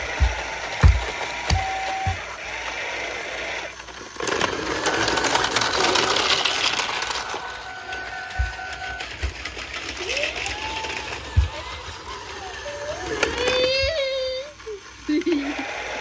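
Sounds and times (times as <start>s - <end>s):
low thumps: 0.0s - 2.3s
toy train motor whirring: 0.0s - 16.0s.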